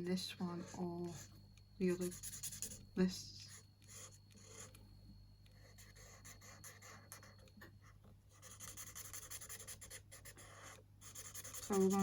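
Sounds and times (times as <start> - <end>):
colouring tool scratching paper: 1.9 - 2.8, 3.8 - 4.8, 5.6 - 7.5, 8.4 - 12.0.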